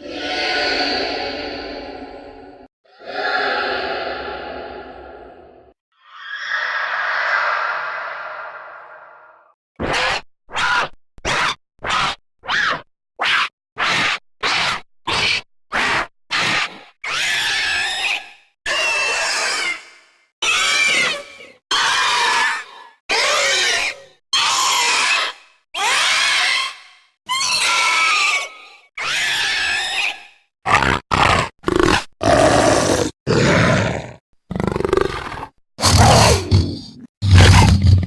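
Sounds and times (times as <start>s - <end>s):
screeching creature calls: 2.9s - 10.0s, 32.2s - 34.2s, 34.8s - 37.9s
low creature grunting: 31.2s - 38.0s.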